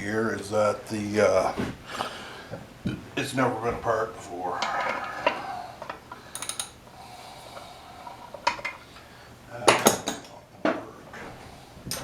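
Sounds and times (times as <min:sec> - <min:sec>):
hand tools clinking on metal: 0:06.3 - 0:06.8.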